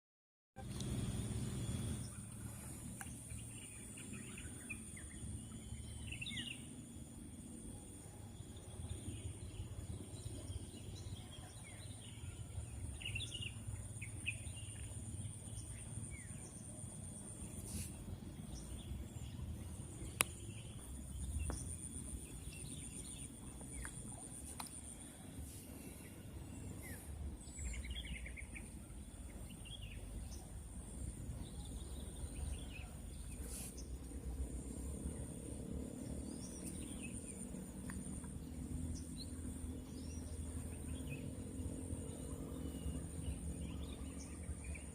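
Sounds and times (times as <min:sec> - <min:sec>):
low wind rumble: 0:00.7 - 0:44.9.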